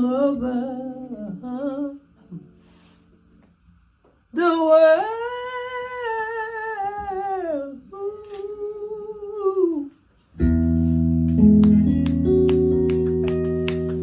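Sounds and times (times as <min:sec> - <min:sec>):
electric guitar chord and notes: 0:10.4 - 0:14.0.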